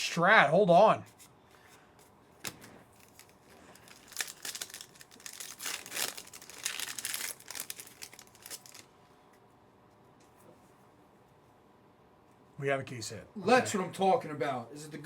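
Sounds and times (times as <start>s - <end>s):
wrapper tearing and crinkling: 2.4s - 8.9s.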